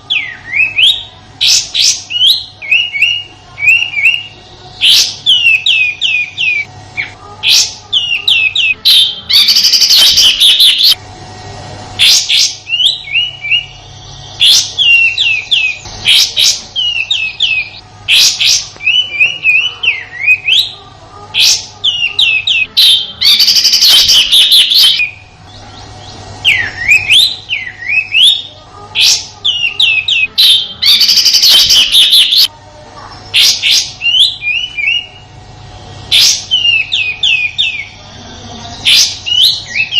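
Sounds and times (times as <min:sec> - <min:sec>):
bird whistled calls: 0:00.0 - 0:11.0, 0:21.4 - 0:25.3, 0:26.0 - 0:32.5, 0:33.3 - 0:35.2, 0:36.1 - 0:38.0
harsh rasping bird calls: 0:00.0 - 0:11.0, 0:12.0 - 0:35.2.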